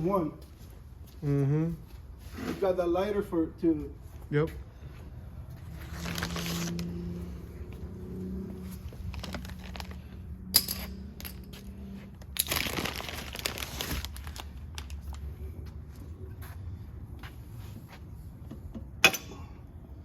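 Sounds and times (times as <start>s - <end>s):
crinkling and rustling of parts: 8.6s - 15.4s.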